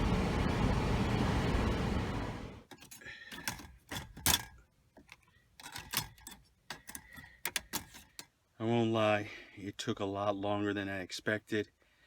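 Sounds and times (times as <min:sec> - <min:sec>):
vehicle running: 0:00.0 - 0:02.6.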